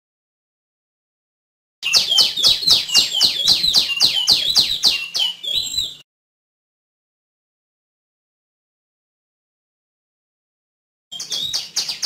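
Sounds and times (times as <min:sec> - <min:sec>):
songbird calling sharp notes: 0:01.8 - 0:06.0, 0:11.1 - 0:12.0.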